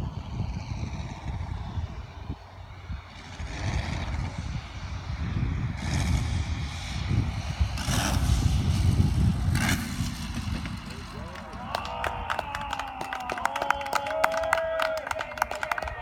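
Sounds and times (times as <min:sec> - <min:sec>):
model radial engines rumbling: 0:00.0 - 0:16.0.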